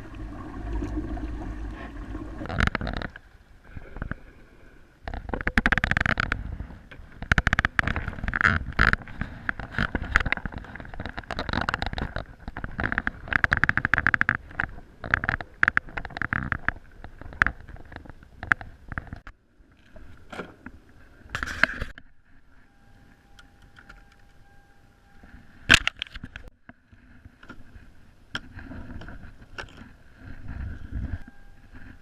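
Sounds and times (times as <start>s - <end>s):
water sounds: 0.0s - 24.5s.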